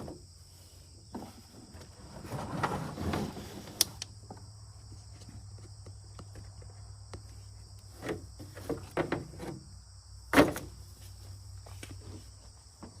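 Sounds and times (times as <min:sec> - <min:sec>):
insects chirring: 0:00.0 - 0:13.0
knocks and clunks: 0:08.0 - 0:09.7, 0:10.3 - 0:10.9.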